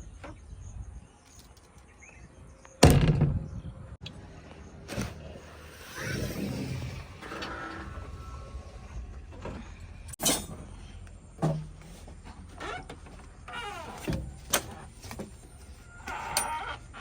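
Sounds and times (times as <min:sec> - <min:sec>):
diesel engine rumbling: 0:04.0 - 0:17.0
sliding squealing sounds: 0:04.9 - 0:10.1, 0:11.9 - 0:17.0.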